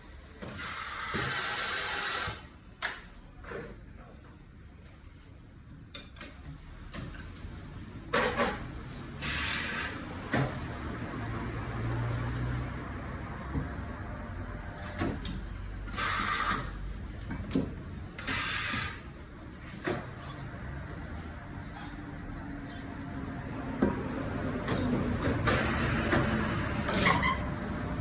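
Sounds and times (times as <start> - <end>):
compressed air hissing: 0.0 - 2.7.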